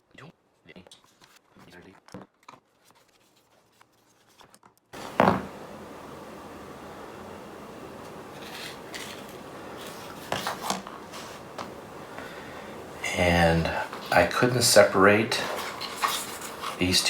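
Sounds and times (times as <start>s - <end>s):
steady background hiss: 5.0s - 17.0s
clicks and scraping on housing: 15.4s - 17.0s.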